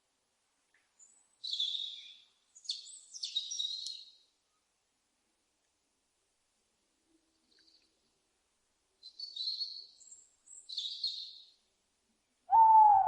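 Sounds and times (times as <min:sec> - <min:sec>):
owl hooting: 0:12.5 - 0:13.0.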